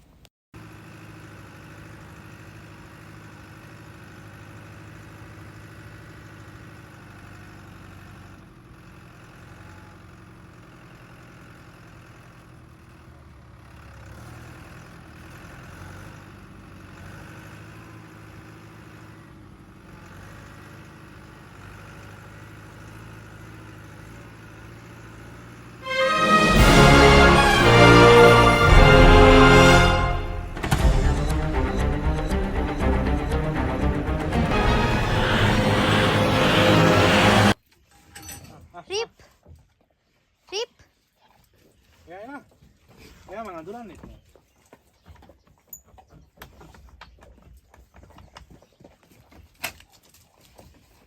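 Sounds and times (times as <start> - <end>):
vehicle engine humming: 0.6 - 37.6.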